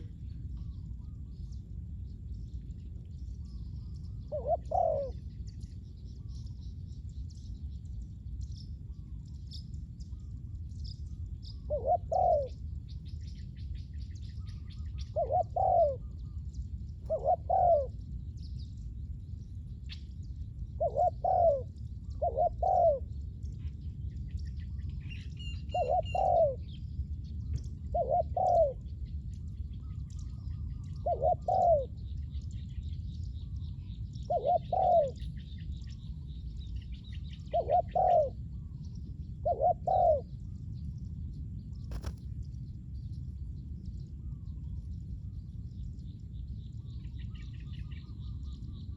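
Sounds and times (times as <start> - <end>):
small birds chirping: 0.0 - 48.9
dove cooing: 3.8 - 5.2, 11.5 - 12.6, 14.7 - 16.4, 17.0 - 18.0, 20.8 - 23.1, 25.4 - 26.7, 27.9 - 28.8, 30.3 - 32.0, 34.3 - 35.3, 37.3 - 38.7, 39.4 - 40.3, 41.9 - 42.2.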